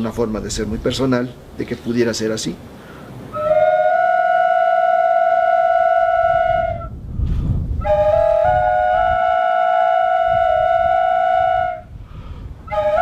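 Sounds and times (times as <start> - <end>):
flute long held notes: 3.3 - 7.0, 7.8 - 11.9, 12.7 - 13.0.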